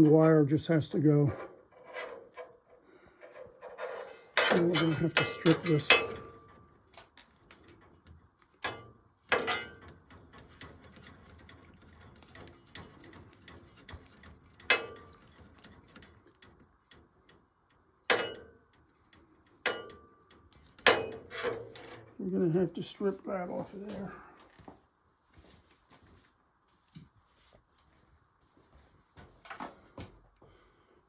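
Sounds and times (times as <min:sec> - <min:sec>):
tools and wire clicking: 0:01.4 - 0:22.2.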